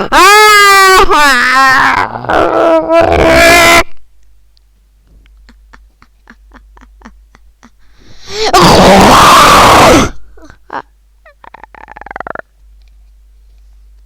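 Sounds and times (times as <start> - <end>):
harsh distorted scream: 0.0 - 3.9, 8.4 - 10.2.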